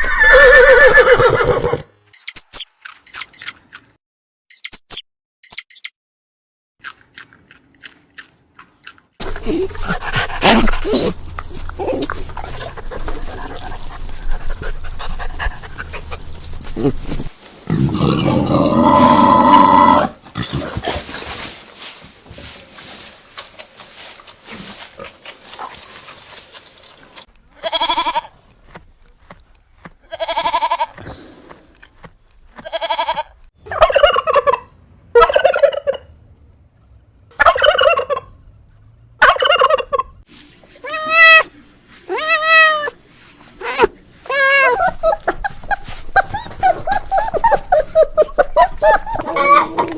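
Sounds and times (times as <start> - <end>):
turkeys gobbling: 33.7 - 36.1, 37.3 - 38.3, 39.2 - 40.1, 46.2 - 49.9.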